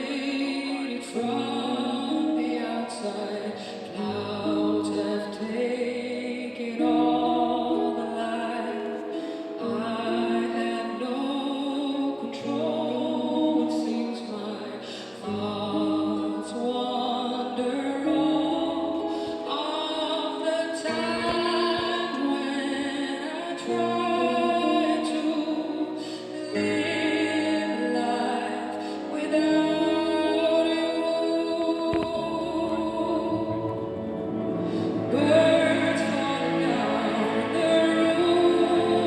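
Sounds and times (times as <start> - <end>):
woman singing pop ballad: 0.0 - 33.9
instrumental accompaniment: 0.0 - 39.0.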